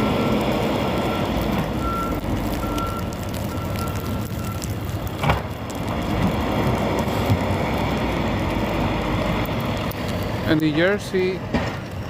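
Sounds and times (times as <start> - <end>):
reversing alarm beeping: 0.0 - 4.8
diesel engine rumble: 0.0 - 12.0.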